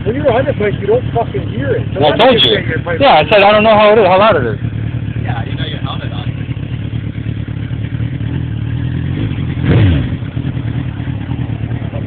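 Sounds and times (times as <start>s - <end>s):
motorcycle engine idling and revving: 0.0s - 12.0s.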